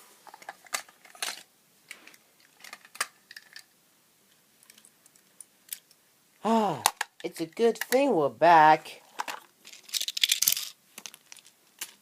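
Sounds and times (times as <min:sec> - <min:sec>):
plastic toys clicking and clacking: 0:00.2 - 0:03.7, 0:04.6 - 0:06.0, 0:06.8 - 0:08.0, 0:09.2 - 0:12.0.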